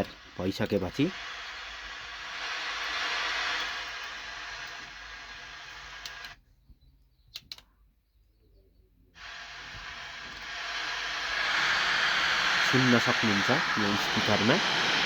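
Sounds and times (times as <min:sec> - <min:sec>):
steady hiss: 0:00.0 - 0:06.4, 0:09.2 - 0:15.0
faint clicks: 0:07.3 - 0:07.7.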